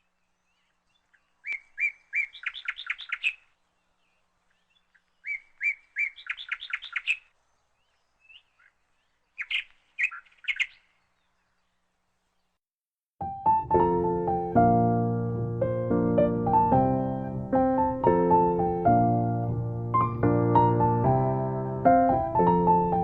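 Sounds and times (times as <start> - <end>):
songbird singing with trill: 0.0 - 12.6.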